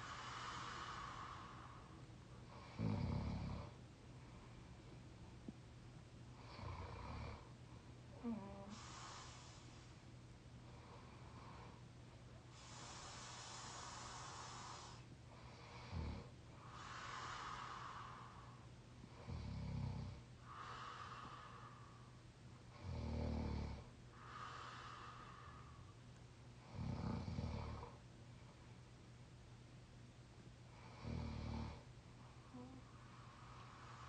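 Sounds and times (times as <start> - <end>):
airy breaths: 0.0 - 2.8, 8.2 - 15.9, 16.5 - 19.3, 20.4 - 22.3, 24.1 - 26.0, 32.3 - 34.0
person snoring: 2.6 - 3.8, 8.2 - 9.6, 19.2 - 21.8, 22.8 - 25.6, 26.7 - 28.0, 32.5 - 32.8.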